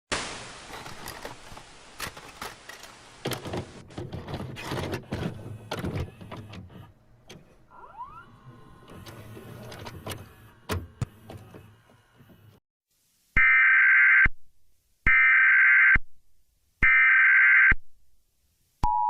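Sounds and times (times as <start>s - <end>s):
vcr mechanical clicks and clunks: 3.2s - 12.6s.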